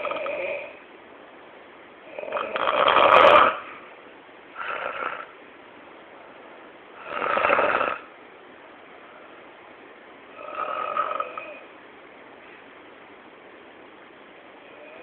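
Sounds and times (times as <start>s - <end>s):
person snoring: 0.0s - 0.8s, 2.1s - 3.7s, 4.6s - 5.3s, 7.0s - 8.1s, 10.4s - 11.6s, 14.6s - 15.0s.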